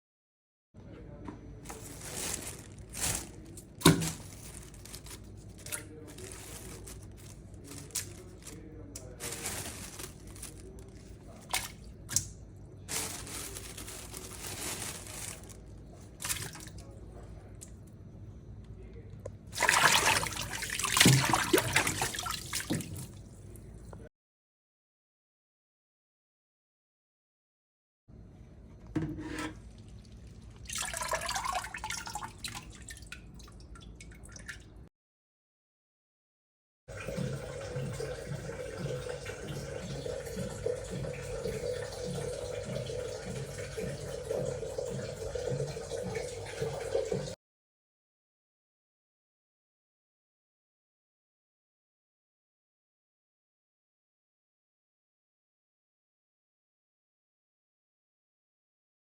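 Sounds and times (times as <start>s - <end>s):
tap water running into sink: 19.6s - 23.2s, 36.9s - 47.4s.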